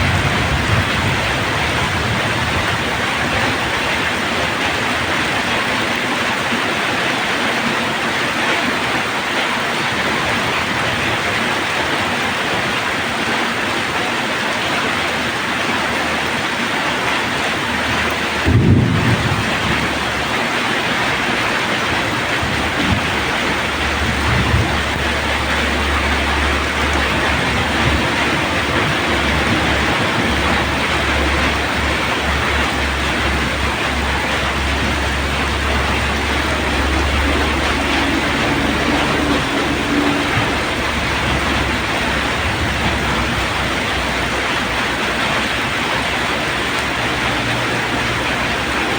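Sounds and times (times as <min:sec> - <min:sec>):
low boom: 0:00.0 - 0:04.8, 0:18.4 - 0:20.3, 0:21.1 - 0:45.0
low rumble: 0:00.0 - 0:05.8, 0:17.7 - 0:48.9
heavy rain falling: 0:00.0 - 0:48.9.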